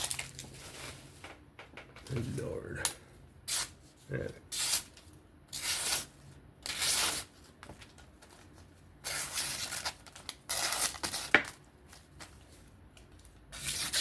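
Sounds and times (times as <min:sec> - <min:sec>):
knife slicing through paper: 0:13.5 - 0:14.0.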